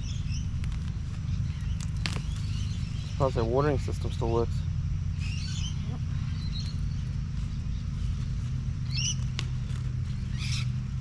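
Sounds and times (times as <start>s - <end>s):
steady low rumble: 0.0s - 11.0s
high bird chirps: 5.1s - 10.9s.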